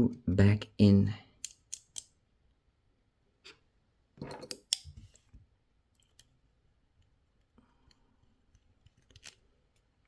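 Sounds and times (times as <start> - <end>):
pistol parts clicking: 1.4 - 2.2.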